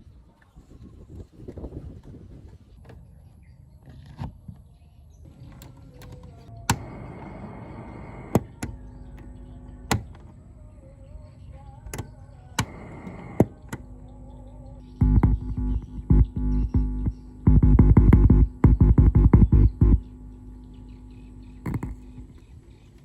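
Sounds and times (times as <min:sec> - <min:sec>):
faint steady hum: 0:00.0 - 0:23.0
loud electronic music: 0:15.0 - 0:20.2.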